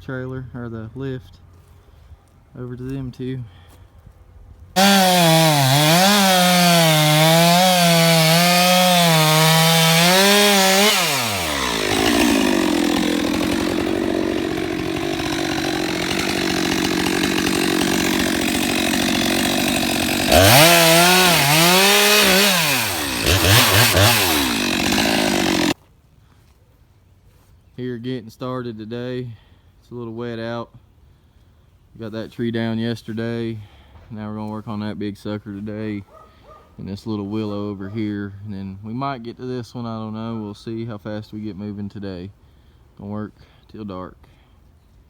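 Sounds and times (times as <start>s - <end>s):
chainsaw cutting wood: 4.8s - 25.8s.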